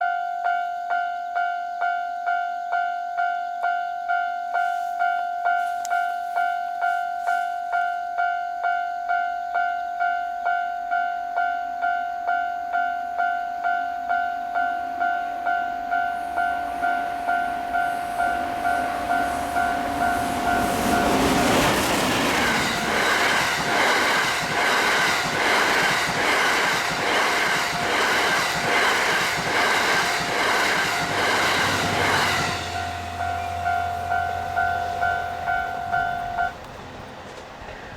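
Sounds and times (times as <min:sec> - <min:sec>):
level-crossing warning bell: 0:00.0 - 0:37.9
train passing at high speed: 0:14.0 - 0:37.9
wheels beating over rail joints: 0:15.0 - 0:37.9.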